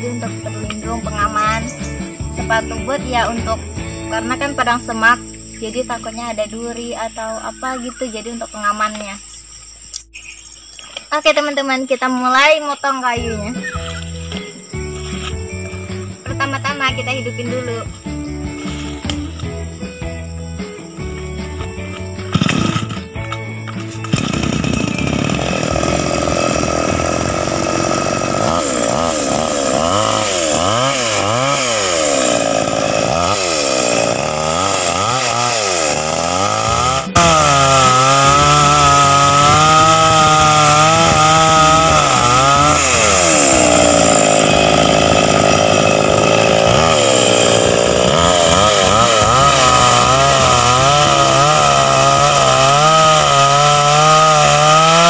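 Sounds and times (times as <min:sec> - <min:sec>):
chainsaw engine revving: 0:00.0 - 0:04.9, 0:20.9 - 0:55.0.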